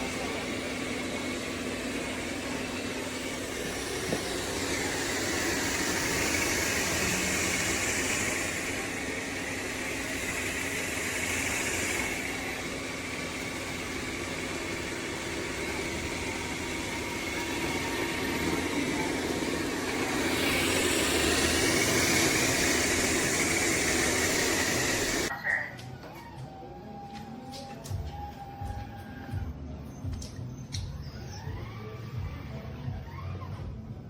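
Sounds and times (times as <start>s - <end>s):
robot vacuum whirring: 0.0s - 25.3s.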